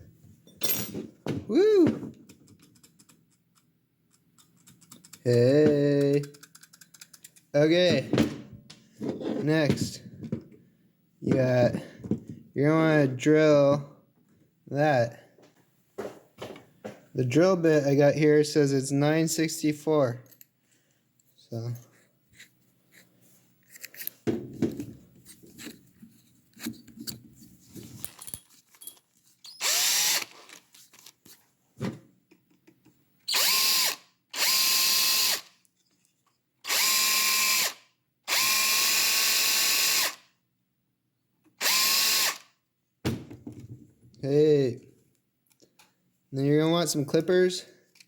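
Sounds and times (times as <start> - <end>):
power drill whining: 29.5 - 30.5, 33.3 - 35.5, 36.7 - 40.2, 41.6 - 42.5.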